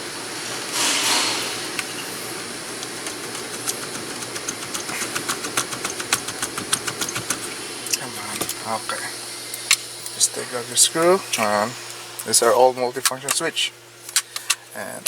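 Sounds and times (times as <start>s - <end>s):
hand tool clicking: 2.8s - 7.5s.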